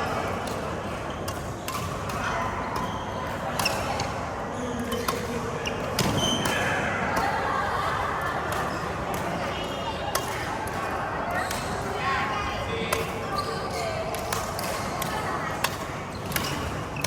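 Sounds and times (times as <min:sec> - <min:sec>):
racket hitting shuttlecock: 0:00.4 - 0:04.2, 0:14.1 - 0:16.9
shoe squeaks on court floor: 0:04.6 - 0:06.7, 0:13.2 - 0:14.1, 0:16.1 - 0:17.0.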